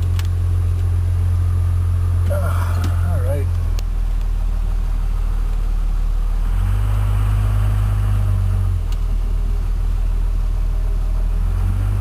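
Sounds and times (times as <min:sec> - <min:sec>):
vehicle engine idling: 0:00.0 - 0:12.0.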